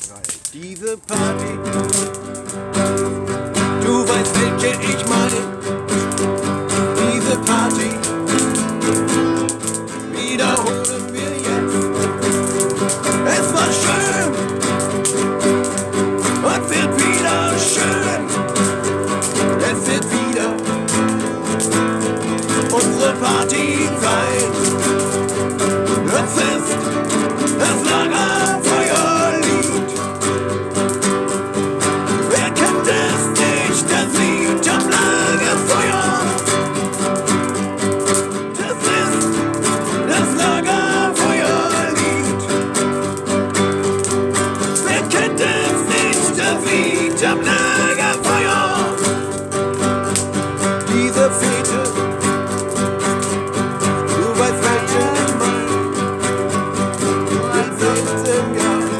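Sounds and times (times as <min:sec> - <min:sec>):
strummed acoustic guitar: 0:00.0 - 0:58.9.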